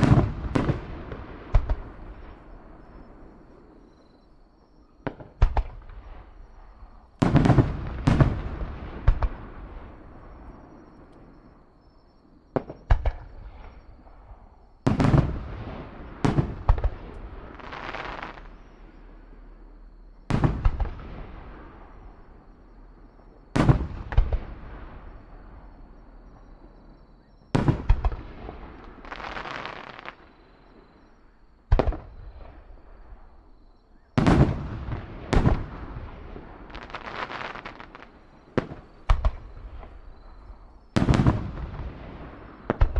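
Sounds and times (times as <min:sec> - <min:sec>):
fireworks crackling: 0:00.0 - 0:03.8, 0:05.1 - 0:10.3, 0:12.5 - 0:19.0, 0:27.5 - 0:30.4, 0:34.2 - 0:42.9
fireworks bangs: 0:00.0 - 0:04.3, 0:05.0 - 0:11.5, 0:12.5 - 0:19.0, 0:20.2 - 0:26.8, 0:27.5 - 0:42.9.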